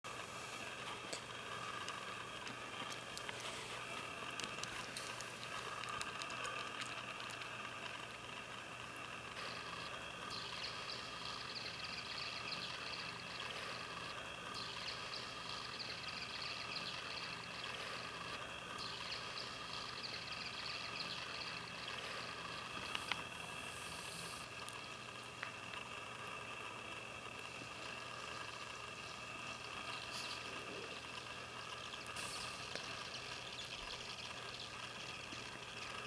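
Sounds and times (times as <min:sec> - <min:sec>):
steady background hum: 0:00.1 - 0:36.0
small clicks: 0:00.6 - 0:10.6, 0:16.4 - 0:23.3, 0:27.3 - 0:36.0.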